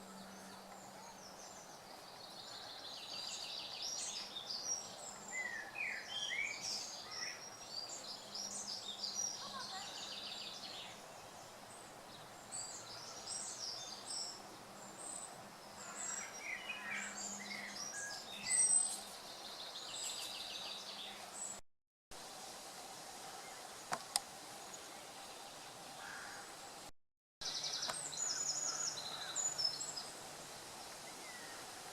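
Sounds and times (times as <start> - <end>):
songbirds chirping and trilling: 0.0 - 21.6, 22.4 - 31.9
stream water running: 22.1 - 31.9.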